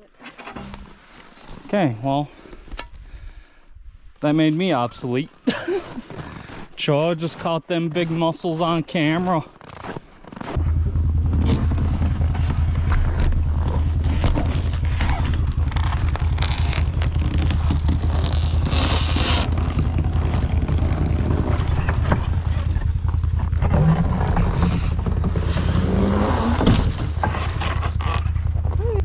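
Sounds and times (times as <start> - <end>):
vehicle engine humming: 10.6 - 29.0
scraping and rustling: 11.4 - 28.6.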